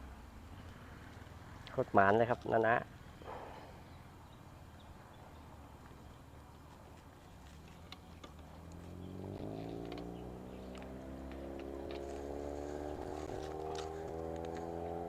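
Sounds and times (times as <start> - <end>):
engine approaching: 7.3 - 15.0.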